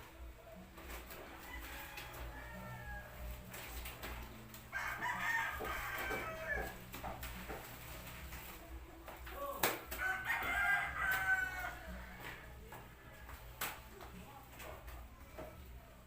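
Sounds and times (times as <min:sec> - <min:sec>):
rooster crowing: 0:01.3 - 0:03.4, 0:04.7 - 0:06.8, 0:10.0 - 0:12.6.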